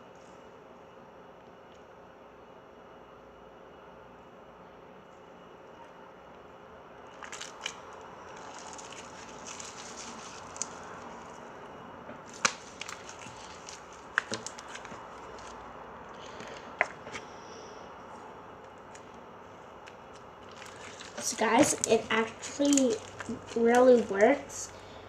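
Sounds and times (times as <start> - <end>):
slime crackling: 7.1 - 17.2, 18.5 - 24.8
sharp slime pops: 12.3 - 13.0.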